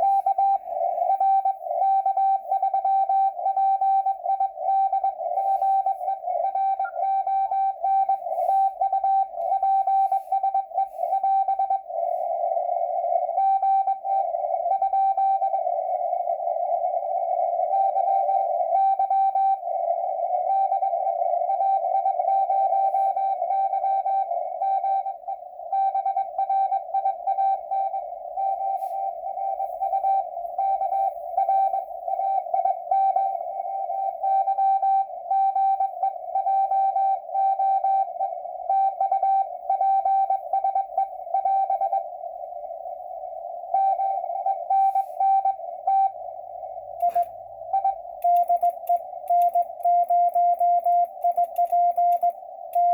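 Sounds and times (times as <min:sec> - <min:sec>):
radio band hiss: 0:00.0 - 0:01.8, 0:04.6 - 0:11.2, 0:11.8 - 0:13.4, 0:44.2 - 0:45.8
morse code tone: 0:00.0 - 0:15.8, 0:17.4 - 0:42.1, 0:43.8 - 0:52.9.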